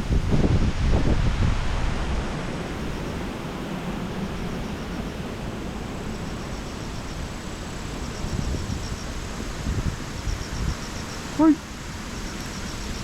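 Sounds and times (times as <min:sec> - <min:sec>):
strong wind rushing: 0:00.0 - 0:06.5, 0:07.1 - 0:12.1.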